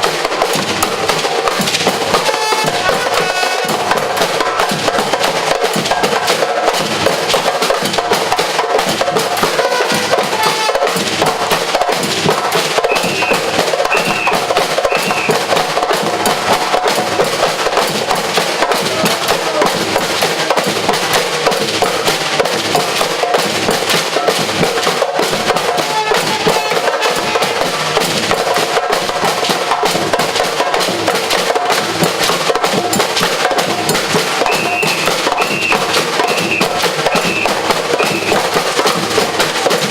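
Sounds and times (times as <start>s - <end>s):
percussion ensemble drumming: 0.0s - 39.9s
shrill whistle blasts: 12.8s - 15.4s, 34.4s - 38.4s.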